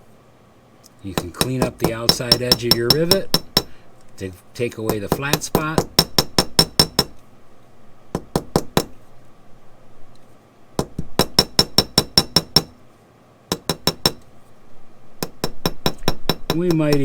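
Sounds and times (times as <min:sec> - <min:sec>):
small hammer tapping metal rivet: 0:01.2 - 0:03.7, 0:04.9 - 0:07.2, 0:10.8 - 0:12.8, 0:13.5 - 0:14.2, 0:15.2 - 0:17.0.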